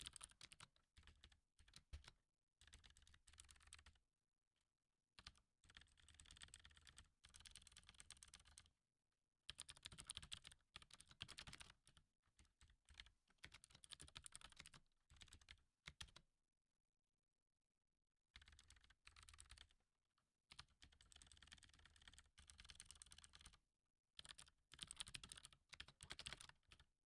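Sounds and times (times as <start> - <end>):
faint keyboard typing: 0.0 - 4.0, 5.2 - 8.7, 9.5 - 16.2, 18.4 - 19.8, 20.5 - 23.6, 24.2 - 26.9.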